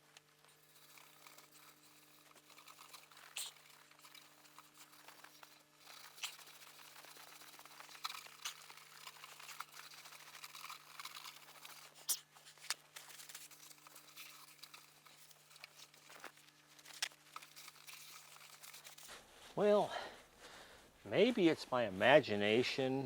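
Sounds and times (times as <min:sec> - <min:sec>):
scratchy rubbing on plastic: 0:00.4 - 0:19.1
steady low hum: 0:12.3 - 0:23.0.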